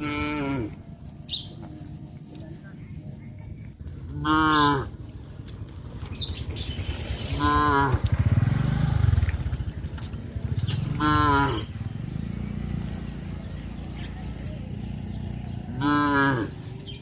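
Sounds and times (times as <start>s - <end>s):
cattle mooing: 0.0s - 0.8s, 4.1s - 5.0s, 7.4s - 8.1s, 10.9s - 11.7s, 15.7s - 16.6s.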